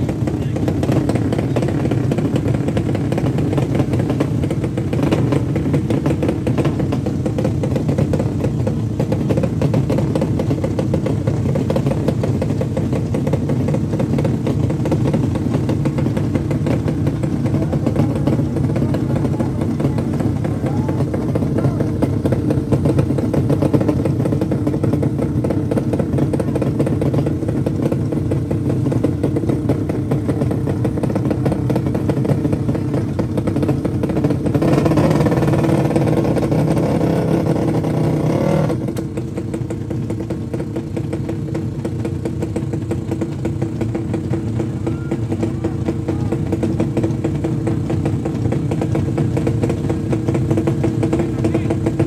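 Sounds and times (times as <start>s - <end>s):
motorcycle engine revving: 0.0s - 52.0s
motorcycle engines running: 0.0s - 52.0s.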